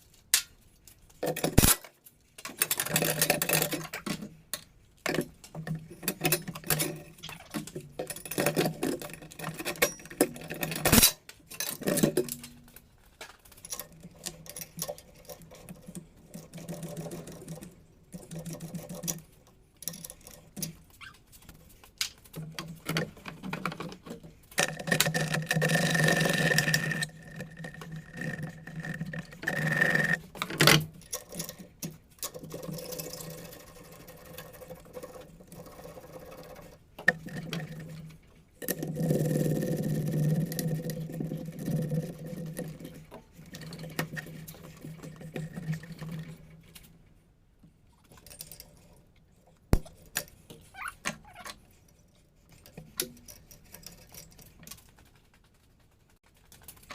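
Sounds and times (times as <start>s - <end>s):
tools clicking and clanking on metal: 0.3s - 39.4s.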